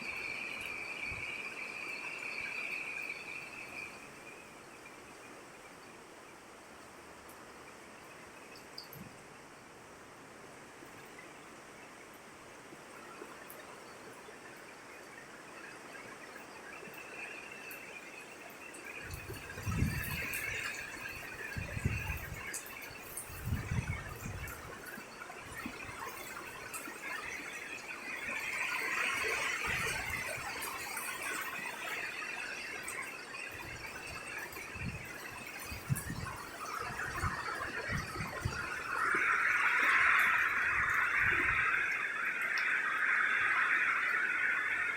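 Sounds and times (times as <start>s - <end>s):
rain and wind hiss: 0.0s - 44.9s
wind gusting on microphone: 19.0s - 26.8s, 28.3s - 31.0s, 33.5s - 41.9s.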